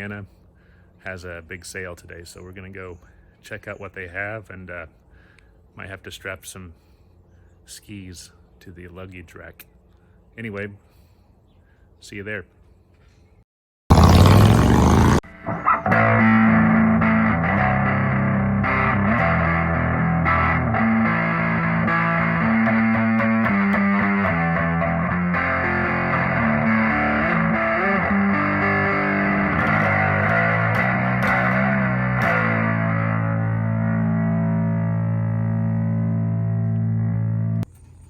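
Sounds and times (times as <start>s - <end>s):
rock music with distorted guitar: 15.8s - 37.6s.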